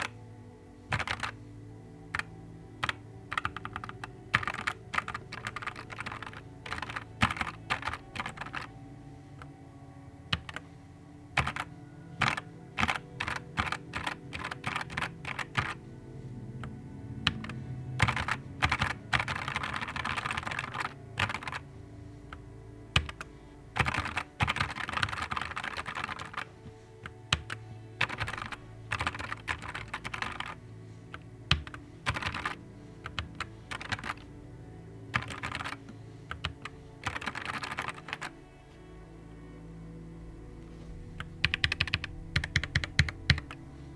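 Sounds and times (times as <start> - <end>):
mechanical keyboard typing: 0.9 - 1.4, 2.1 - 8.7, 10.3 - 10.6, 11.4 - 15.8, 17.3 - 21.6, 23.0 - 26.5, 27.3 - 30.6, 31.5 - 34.2, 35.1 - 38.4, 41.3 - 43.6.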